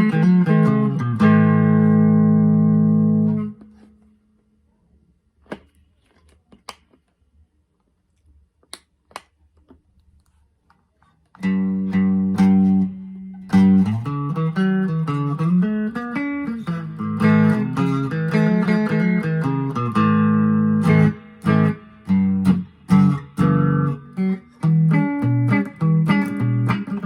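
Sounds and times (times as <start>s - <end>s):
electric guitar playing: 0.0s - 3.9s, 11.4s - 27.0s.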